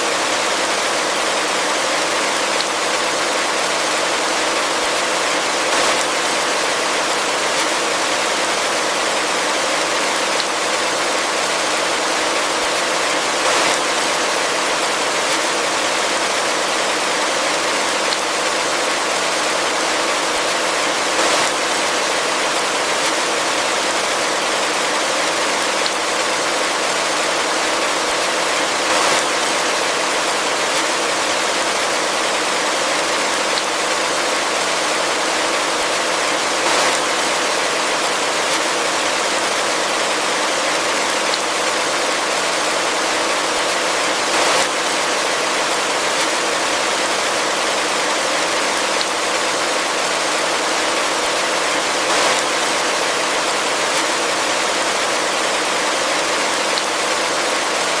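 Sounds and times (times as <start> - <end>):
heavy rain hissing: 0.0 - 58.0.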